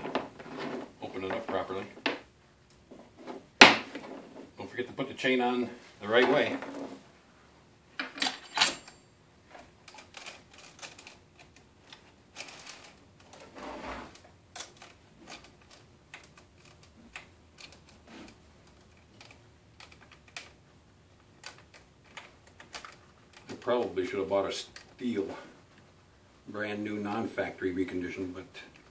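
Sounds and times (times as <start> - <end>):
saw chain clicking and clinking: 8.0 - 9.1.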